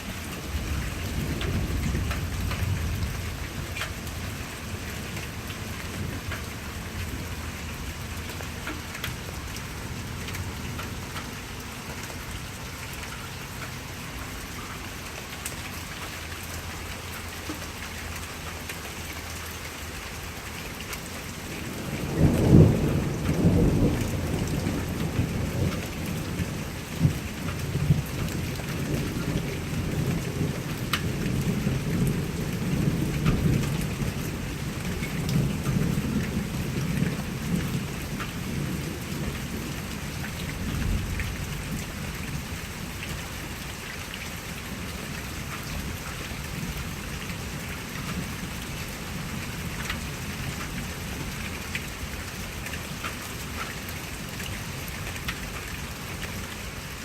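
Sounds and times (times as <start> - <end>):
steady rain falling: 0.0 - 57.0
thunder rumbling: 0.4 - 3.9, 21.5 - 42.6.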